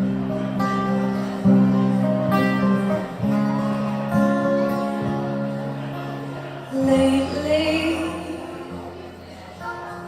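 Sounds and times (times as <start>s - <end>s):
acoustic guitar chords: 0.0s - 10.0s.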